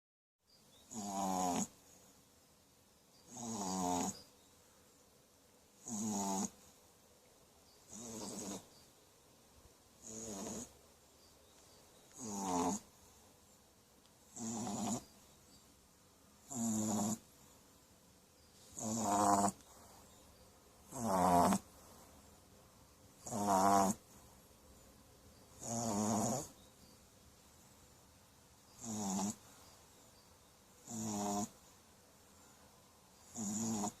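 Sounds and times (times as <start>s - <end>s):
puppy snoring: 0.8s - 1.8s, 3.2s - 4.3s, 5.8s - 6.7s, 7.8s - 8.8s, 10.0s - 10.8s, 12.1s - 13.1s, 14.2s - 15.2s, 16.4s - 17.3s, 18.6s - 19.9s, 20.8s - 21.8s, 23.1s - 24.2s, 25.5s - 26.6s, 28.7s - 29.6s, 30.8s - 31.7s, 33.2s - 34.0s.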